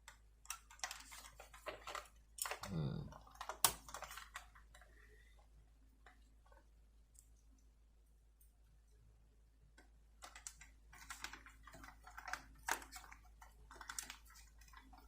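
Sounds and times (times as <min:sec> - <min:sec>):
small plastic parts clicking: 0:00.0 - 0:05.0, 0:09.7 - 0:15.0.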